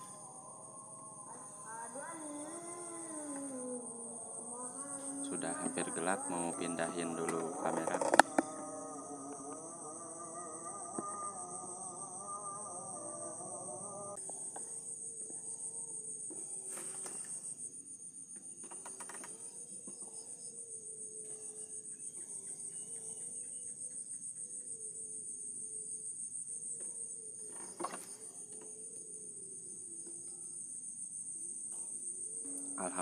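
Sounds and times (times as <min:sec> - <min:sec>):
faint wavering tone: 0:00.0 - 0:14.2, 0:32.2 - 0:33.0
insects chirring: 0:00.0 - 0:33.0.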